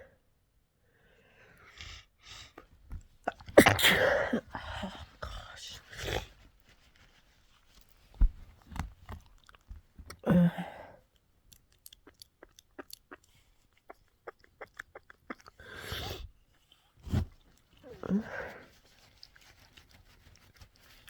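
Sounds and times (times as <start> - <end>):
small wet clicks: 11.1 - 15.6
breathy sniff: 15.6 - 16.3.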